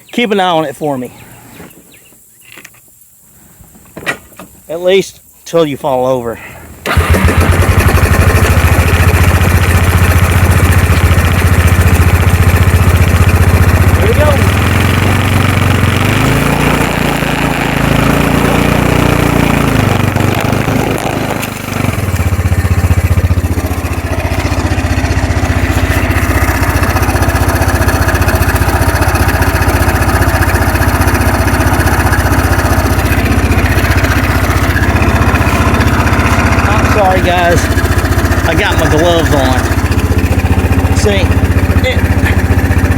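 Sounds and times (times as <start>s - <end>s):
atv engine revving and running: 6.8s - 42.9s.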